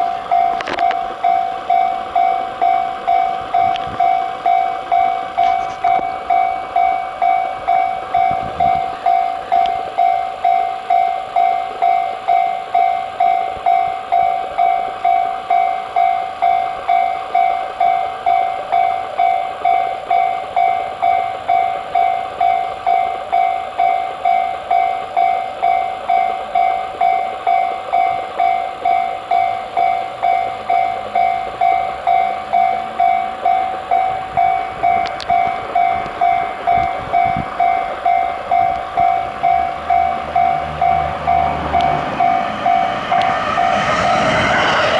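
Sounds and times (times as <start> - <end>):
level crossing alarm bell ringing: 0.0 - 44.9.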